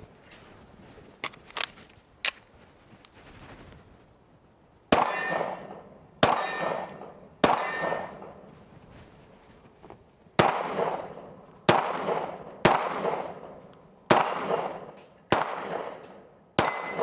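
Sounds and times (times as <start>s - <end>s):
pistol shots: 4.9s - 8.4s, 10.4s - 17.0s
steel targets ringing: 5.0s - 8.5s, 14.1s - 14.8s, 16.6s - 17.0s.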